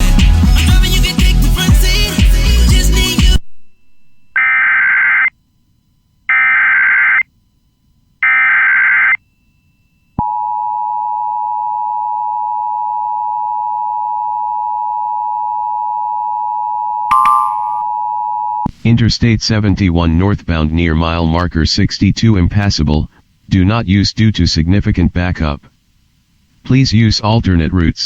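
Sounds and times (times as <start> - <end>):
steady two-tone attention signal: 17.1 - 17.9.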